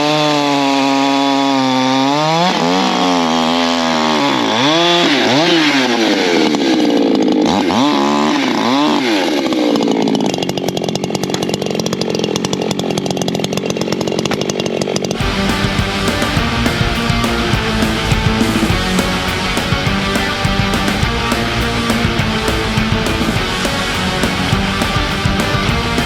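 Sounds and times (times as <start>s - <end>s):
chainsaw cutting wood: 0.0s - 26.0s
rock guitar music: 15.2s - 26.0s.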